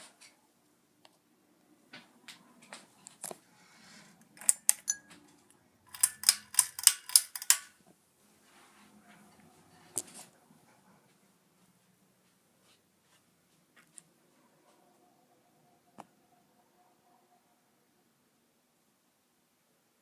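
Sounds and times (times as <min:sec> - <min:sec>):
sharp mechanical clicks: 0:04.4 - 0:05.0, 0:05.9 - 0:07.7
faint low hum: 0:07.8 - 0:20.0.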